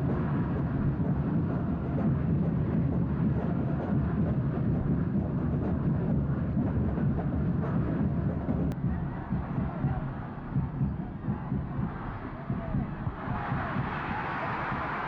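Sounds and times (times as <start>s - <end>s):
stadium crowd roaring: 8.8s - 15.0s.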